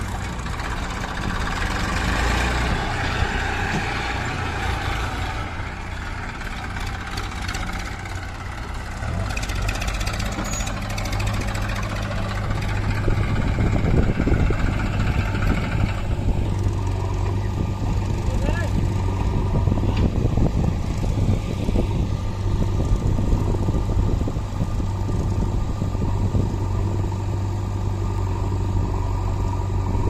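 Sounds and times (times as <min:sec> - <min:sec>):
diesel machinery engine running: 0:00.0 - 0:30.0.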